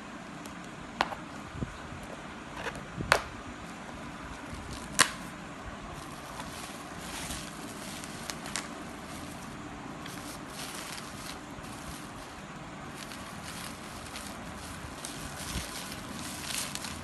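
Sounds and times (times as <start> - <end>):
background hiss: 0.0 - 17.0
parcel clicks and rustles: 4.2 - 5.3, 6.0 - 17.0.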